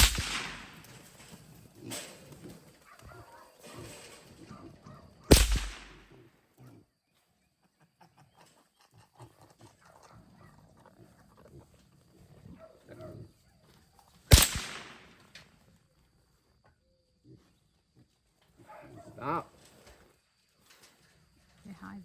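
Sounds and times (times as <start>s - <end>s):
rifle shot: 0.0s - 1.1s, 5.3s - 6.1s, 14.3s - 15.3s
hogs grunting and shuffling: 0.8s - 5.3s, 6.0s - 14.3s.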